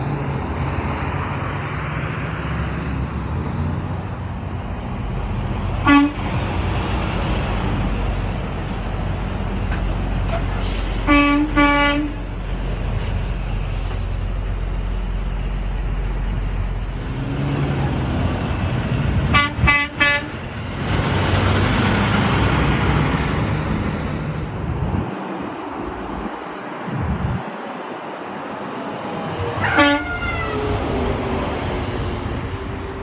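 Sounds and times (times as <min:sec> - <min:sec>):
traffic rumble: 0:00.0 - 0:33.0
vehicle horn blasts: 0:05.8 - 0:06.3, 0:11.1 - 0:12.3, 0:19.3 - 0:20.3, 0:29.4 - 0:31.0
vehicle rushing by: 0:16.9 - 0:19.4, 0:20.4 - 0:33.0.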